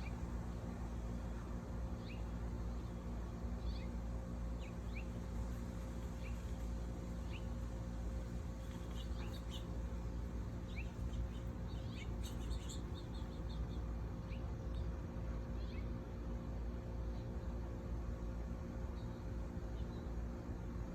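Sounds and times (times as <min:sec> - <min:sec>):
songbirds chirping: 0:00.0 - 0:16.3
steady low hum: 0:00.0 - 0:20.9.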